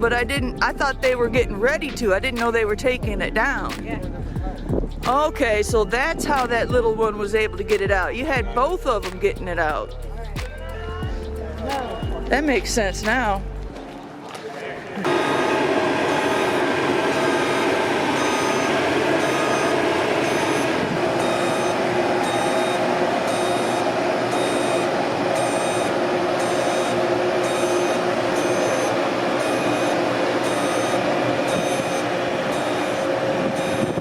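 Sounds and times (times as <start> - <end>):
heavy vehicle engine running: 15.0 - 34.0
backup alarm beeping: 15.1 - 34.0.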